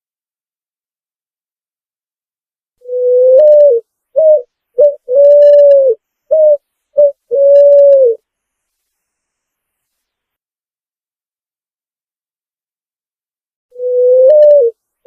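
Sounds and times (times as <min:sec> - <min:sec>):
pigeon cooing: 0:02.8 - 0:08.2, 0:13.8 - 0:14.8.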